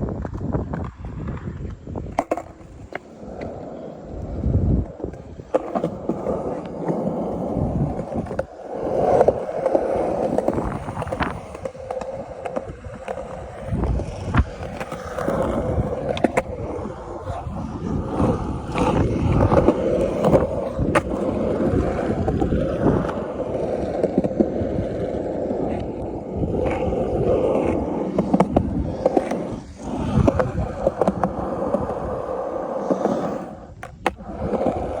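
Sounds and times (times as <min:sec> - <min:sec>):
skateboard clacks: 0:00.0 - 0:35.0
skateboard wheels rolling on pavement: 0:00.0 - 0:35.0.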